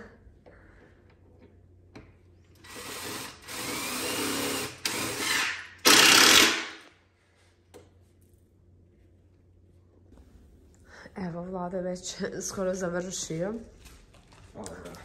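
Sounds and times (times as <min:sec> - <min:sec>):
power drill running: 0:02.6 - 0:06.9.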